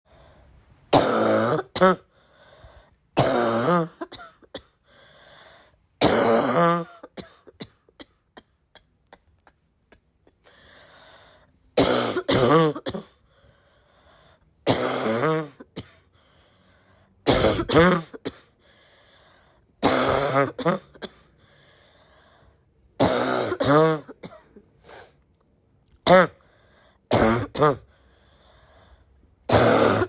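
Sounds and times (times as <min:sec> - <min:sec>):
person breathing: 0:00.1 - 0:00.7, 0:02.1 - 0:03.0, 0:04.8 - 0:05.8, 0:10.4 - 0:11.6, 0:13.2 - 0:14.6, 0:16.1 - 0:17.2, 0:18.5 - 0:19.8, 0:21.3 - 0:22.8, 0:26.4 - 0:27.1, 0:27.9 - 0:29.3
person coughing: 0:00.9 - 0:02.1, 0:03.2 - 0:04.8, 0:06.0 - 0:09.6, 0:11.8 - 0:13.2, 0:14.7 - 0:16.1, 0:17.2 - 0:18.5, 0:19.8 - 0:21.3, 0:23.0 - 0:25.1, 0:26.0 - 0:26.4, 0:27.1 - 0:27.9, 0:29.5 - 0:30.0.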